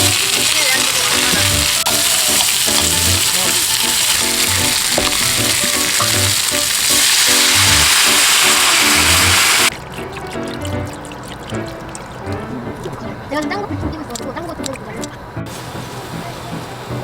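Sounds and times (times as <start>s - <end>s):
food sizzling over high heat: 0.0s - 9.7s, 15.5s - 17.0s
background music: 0.0s - 17.0s.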